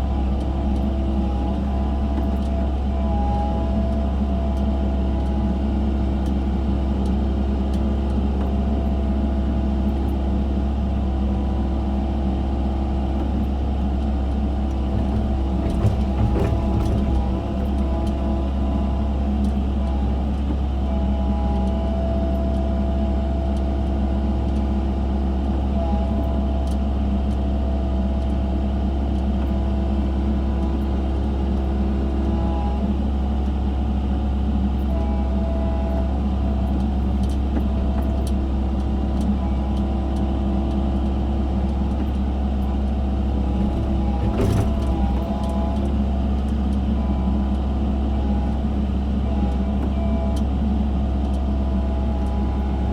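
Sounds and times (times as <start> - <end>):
excavator diesel engine hum: 0.0 - 52.9
excavator knock: 14.8 - 18.1, 43.5 - 45.6
hydraulic whine: 51.7 - 52.9.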